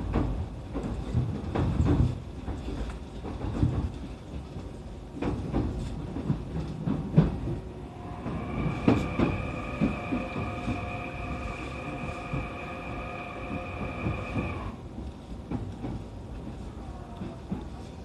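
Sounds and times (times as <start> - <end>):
train clattering over rail joints: 0.0 - 18.0
high train whine: 5.1 - 18.0.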